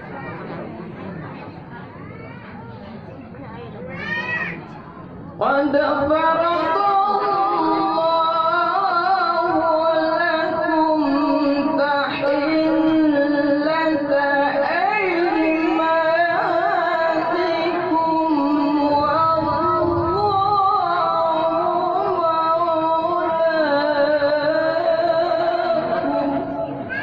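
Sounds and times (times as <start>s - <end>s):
person chanting melismatic recitation: 5.4s - 27.0s.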